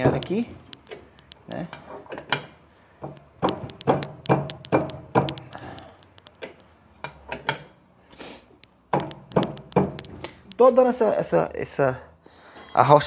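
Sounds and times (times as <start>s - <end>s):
tool clicking and knocking on metal: 0.0s - 7.8s, 8.6s - 10.7s.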